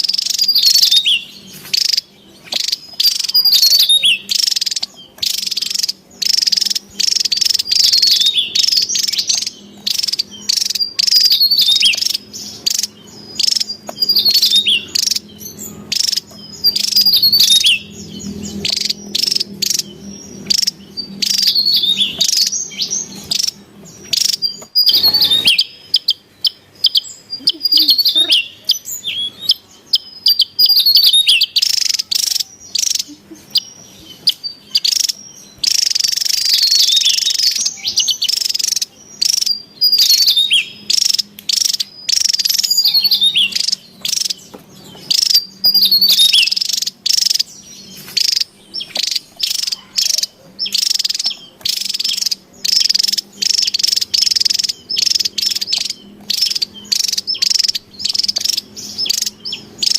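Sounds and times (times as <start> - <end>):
bird chirping and twittering: 0.0 - 59.9
hissing insect-like buzz: 15.9 - 25.3.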